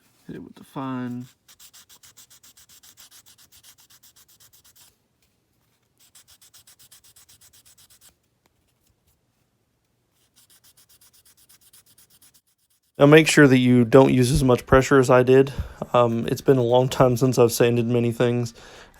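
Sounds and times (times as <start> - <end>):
sanding stick rubbing plastic: 0.8 - 5.0, 5.9 - 8.2, 10.2 - 13.0, 16.1 - 17.5.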